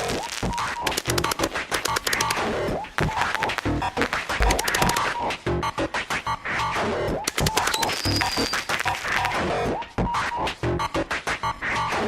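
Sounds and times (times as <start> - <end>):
sharp cracks and hits: 0.0 - 5.2, 7.2 - 9.5
music: 0.0 - 12.0.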